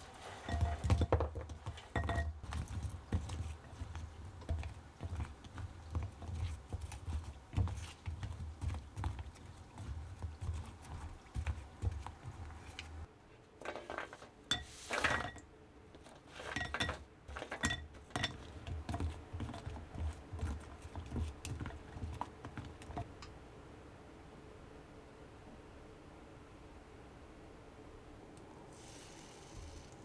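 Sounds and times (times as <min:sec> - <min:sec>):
rustling scrapes: 0:00.0 - 0:01.9, 0:09.0 - 0:15.4, 0:16.0 - 0:17.6
utensils and dishes clinking: 0:16.4 - 0:18.8.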